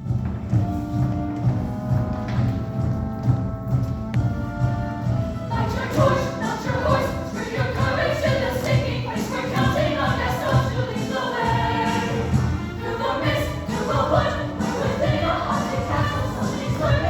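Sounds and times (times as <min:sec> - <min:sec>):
choir singing in parts: 0:05.5 - 0:17.0.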